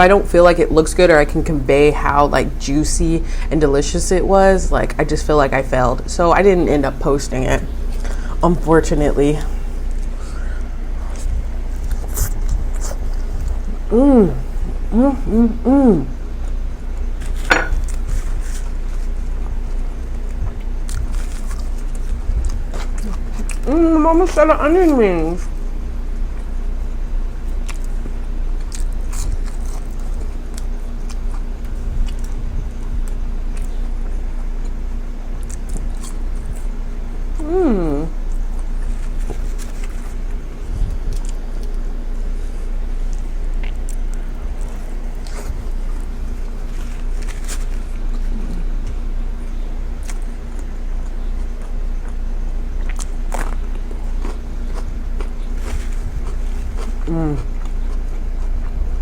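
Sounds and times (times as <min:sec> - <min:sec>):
low electrical hum: 0:00.0 - 0:59.0
chewing crunchy onion rings: 0:09.7 - 0:59.0
mouth noises: 0:13.9 - 0:16.2.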